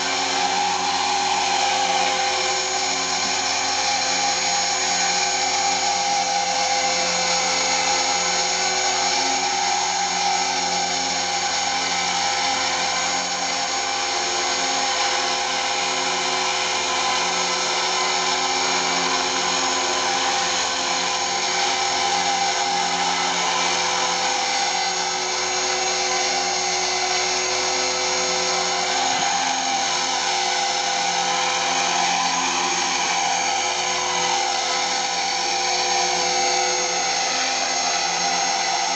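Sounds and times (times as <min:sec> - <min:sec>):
electric rc helicopter hovering: 0:00.0 - 0:38.9.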